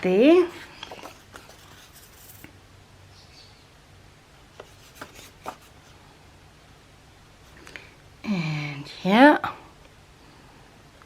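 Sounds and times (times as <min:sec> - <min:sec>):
low steady hum: 0:00.0 - 0:11.0
paper sliding: 0:00.9 - 0:02.5, 0:04.6 - 0:06.0.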